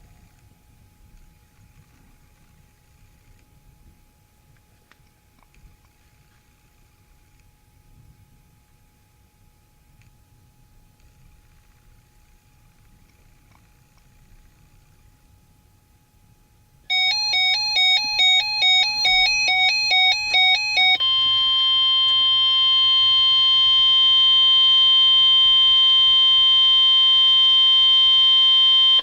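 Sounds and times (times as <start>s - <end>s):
long steady alarm tone: 15.6s - 29.0s
warbling two-pitch beep: 16.9s - 24.8s.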